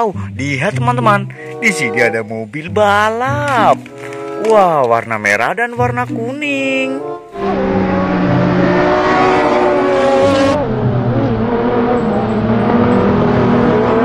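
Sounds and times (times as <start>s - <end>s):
race car engine: 7.0s - 14.0s.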